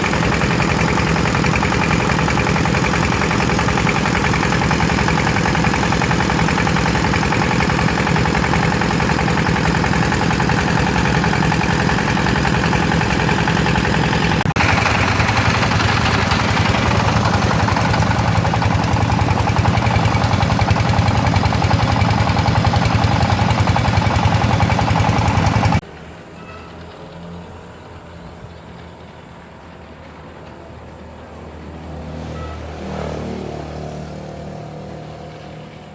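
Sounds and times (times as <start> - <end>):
water pump machine running: 0.0 - 25.8.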